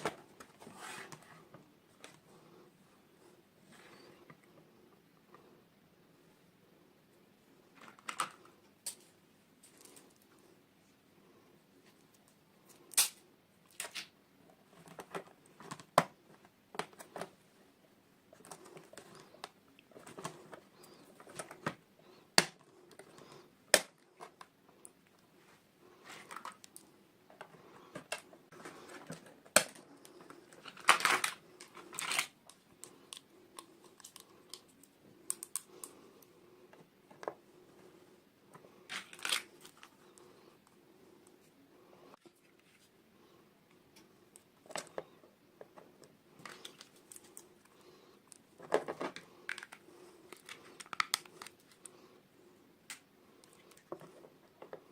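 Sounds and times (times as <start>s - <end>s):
packaging rustling and tearing: 38.9s - 39.9s.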